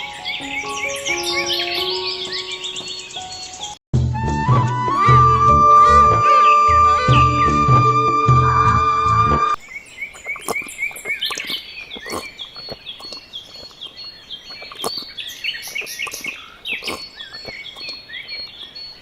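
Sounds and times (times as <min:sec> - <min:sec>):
small birds chirping: 0:00.0 - 0:03.8, 0:09.6 - 0:19.0
music: 0:00.0 - 0:09.6.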